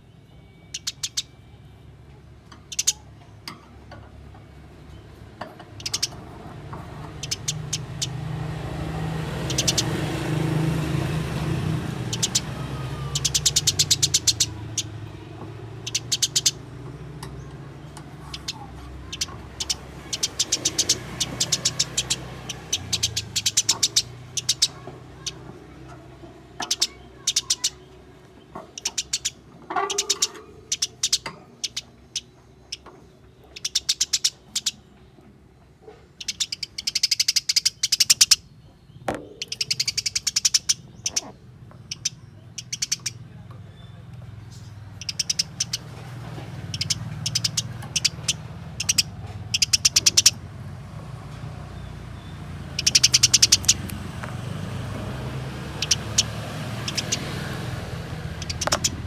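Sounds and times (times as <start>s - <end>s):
sparrows chirping: 0.0s - 59.0s.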